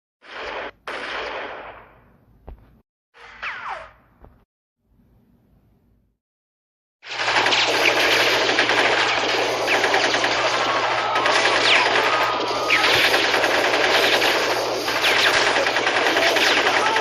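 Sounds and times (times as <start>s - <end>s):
machine-gun fire: 0.2s - 2.1s, 7.0s - 17.0s
bullet ricochet whines: 3.2s - 4.1s, 7.2s - 17.0s.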